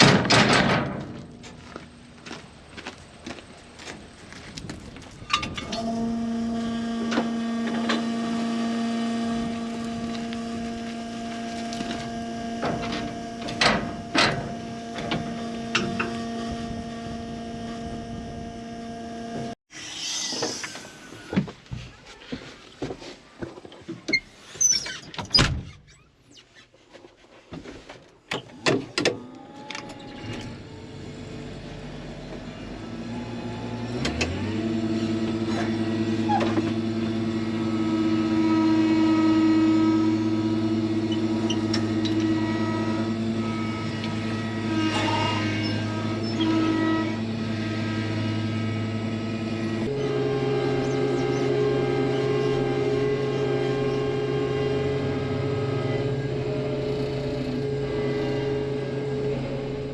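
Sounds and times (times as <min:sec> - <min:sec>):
engine winding up and running: 0:29.2 - 0:59.9.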